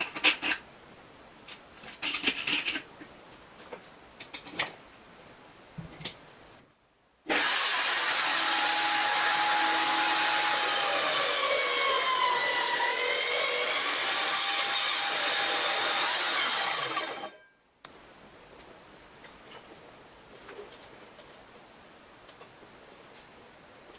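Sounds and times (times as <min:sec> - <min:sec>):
power tool cutting wood: 0:07.3 - 0:17.4.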